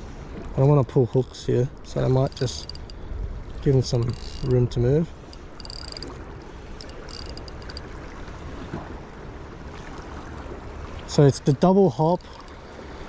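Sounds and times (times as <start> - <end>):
wind: 0.0 - 13.0
fishing reel drag clicking: 2.0 - 3.0, 3.8 - 7.9, 11.4 - 12.6.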